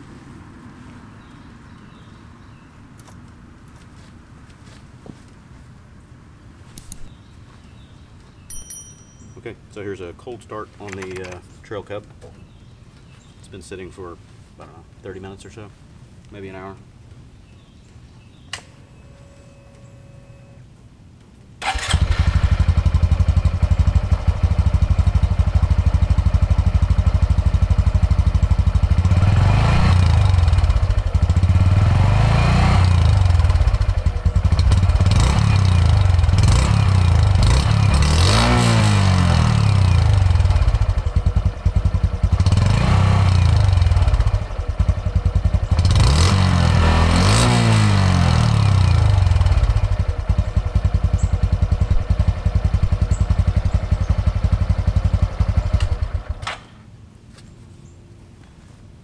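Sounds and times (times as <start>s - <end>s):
motorcycle engine idling: 21.6s - 56.4s
motorcycle engine revving: 21.6s - 56.4s.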